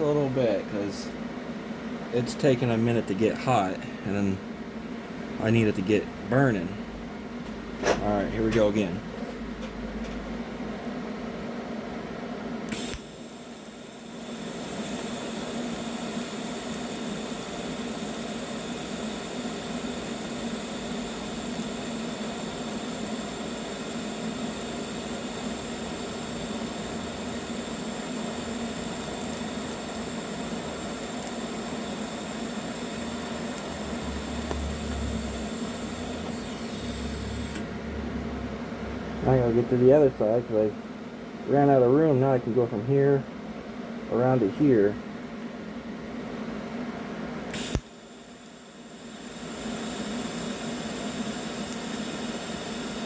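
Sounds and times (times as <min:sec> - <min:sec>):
welding arc buzzing hiss: 0:05.2 - 0:09.0, 0:12.7 - 0:37.8, 0:47.5 - 0:53.0.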